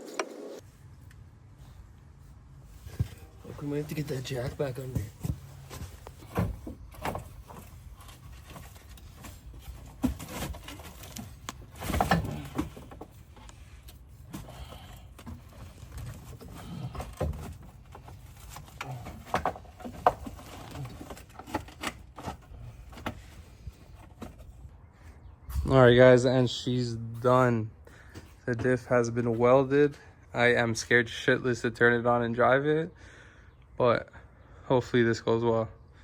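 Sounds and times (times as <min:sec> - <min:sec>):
tools and metal parts clanking: 0:04.2 - 0:13.5.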